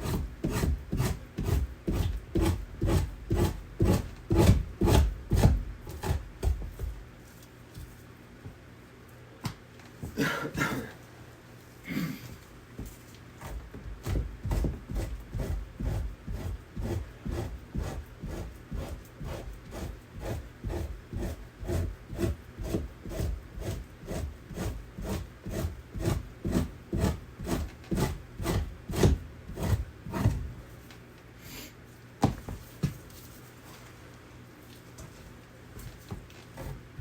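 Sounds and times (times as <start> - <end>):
knife scraping hide: 0.0 - 6.3, 13.4 - 30.4, 35.8 - 37.0.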